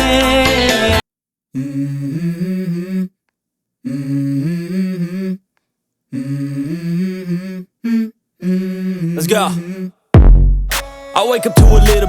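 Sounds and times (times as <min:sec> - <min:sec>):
person humming: 0:01.6 - 0:03.2, 0:03.8 - 0:05.5, 0:06.1 - 0:10.0, 0:11.5 - 0:12.0.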